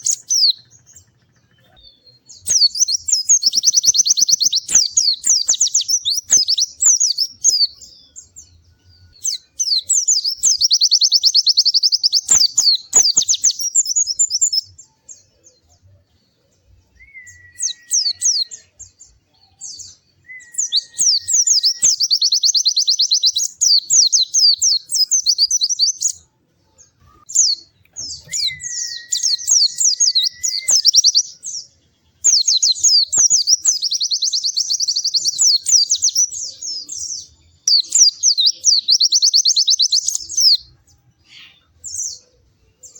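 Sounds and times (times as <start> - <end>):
low whistled bird notes: 16.9 - 18.9, 19.6 - 26.1, 27.0 - 31.6.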